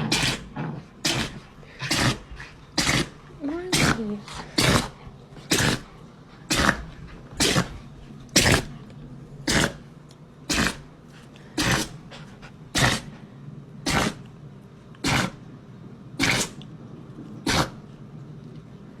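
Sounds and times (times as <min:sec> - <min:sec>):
dog sneezing: 0:00.0 - 0:07.8, 0:08.4 - 0:08.8, 0:09.5 - 0:09.8, 0:10.5 - 0:10.9, 0:11.6 - 0:13.2, 0:13.9 - 0:14.2, 0:15.0 - 0:15.4, 0:16.2 - 0:16.6, 0:17.4 - 0:17.8.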